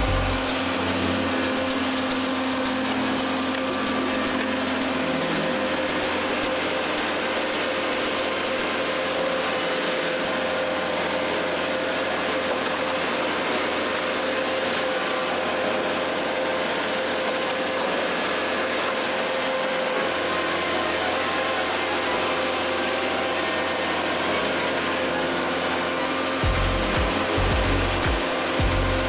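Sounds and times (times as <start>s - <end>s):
machine hum: 0.0s - 8.7s, 20.0s - 29.0s.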